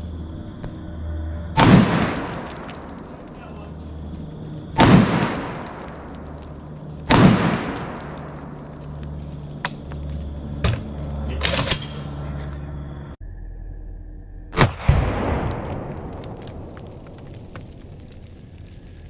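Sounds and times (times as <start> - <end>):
rifle shots with rolling echo: 1.6 - 3.4, 4.4 - 8.8.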